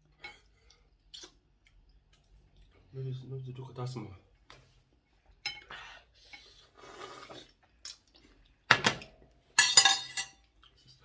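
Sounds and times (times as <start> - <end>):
cutlery clinking on bowls: 8.7 - 10.5.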